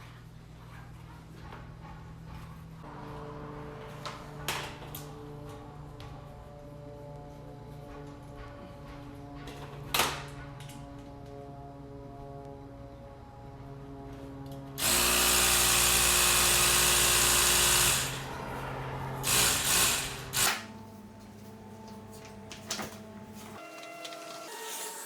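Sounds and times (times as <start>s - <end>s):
handheld power tool motor: 14.8s - 18.6s, 19.2s - 20.8s.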